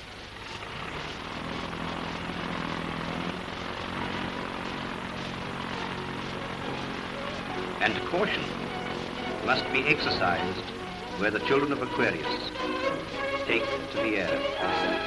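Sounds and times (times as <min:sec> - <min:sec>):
film soundtrack hiss: 0:00.0 - 0:15.0
propeller aeroplane engine: 0:00.0 - 0:15.0
person speaking: 0:09.4 - 0:15.0.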